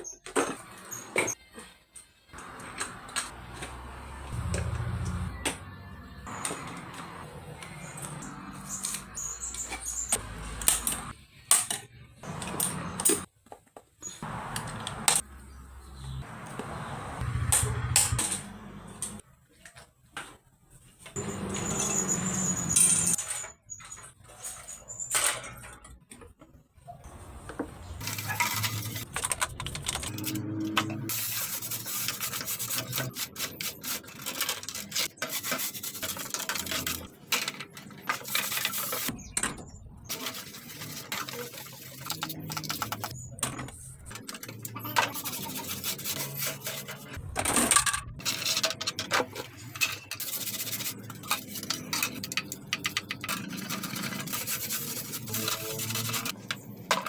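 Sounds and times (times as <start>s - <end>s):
rubbing and scrubbing: 28.0s - 39.1s, 40.1s - 43.2s, 43.9s - 47.2s, 48.2s - 57.0s.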